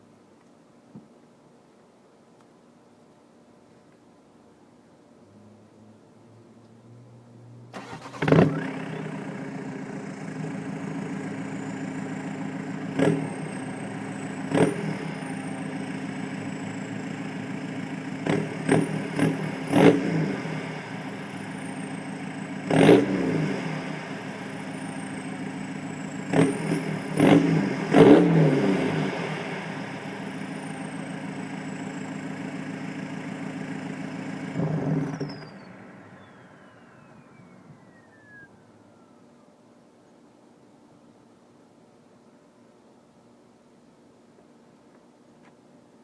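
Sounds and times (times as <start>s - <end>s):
engine throttle blips: 7.7s - 39.2s
diesel engine idling: 7.8s - 39.2s
turbo whistle: 35.0s - 39.2s.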